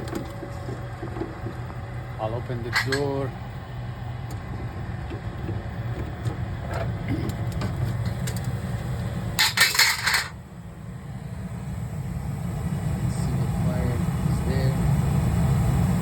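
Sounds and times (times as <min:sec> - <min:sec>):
furnace humming: 0:00.0 - 0:16.0
metal panel clattering: 0:09.4 - 0:10.4.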